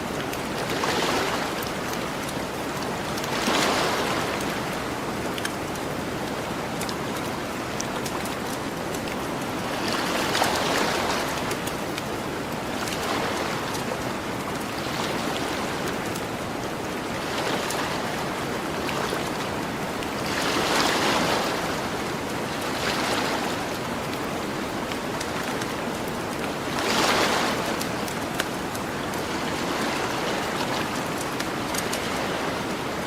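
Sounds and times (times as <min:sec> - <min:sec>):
ocean waves washing onto beach: 0:00.0 - 0:33.0
campfire crackling: 0:04.8 - 0:09.6, 0:27.6 - 0:29.3.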